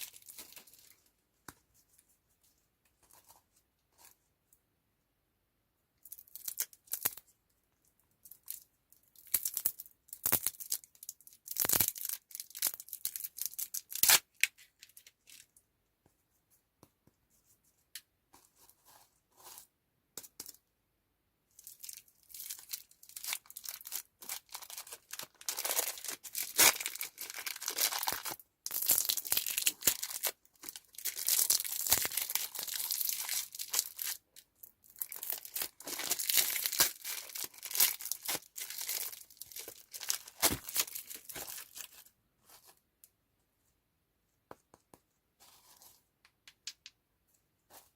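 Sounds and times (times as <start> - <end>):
plastic wrappers crinkling and tearing: 21.6 - 42.8.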